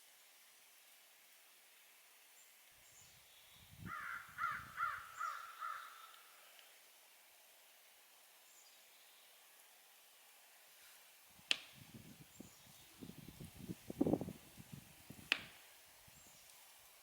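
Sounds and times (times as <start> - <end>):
bird calling: 3.8 - 6.4.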